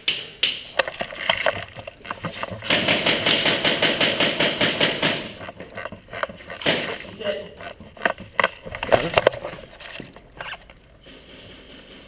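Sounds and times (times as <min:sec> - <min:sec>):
airsoft guns firing: 0:02.0 - 0:05.5, 0:06.6 - 0:07.4.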